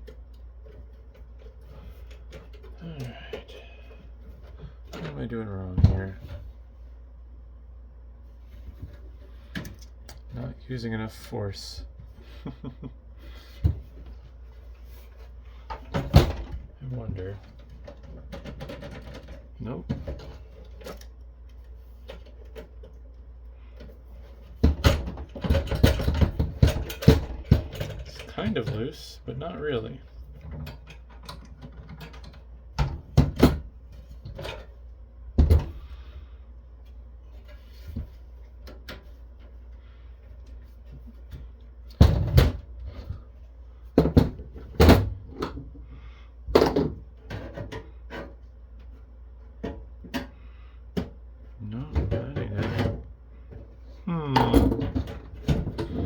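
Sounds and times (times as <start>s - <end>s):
metal clunks and knocks: 24.6s - 28.8s.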